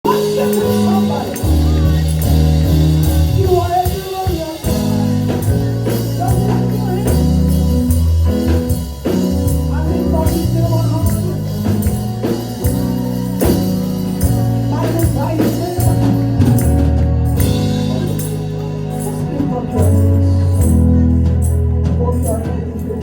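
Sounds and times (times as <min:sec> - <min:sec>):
person singing: 0:00.0 - 0:08.0
tambourine striking: 0:00.0 - 0:22.9
keyboard and bass chords: 0:00.0 - 0:23.0.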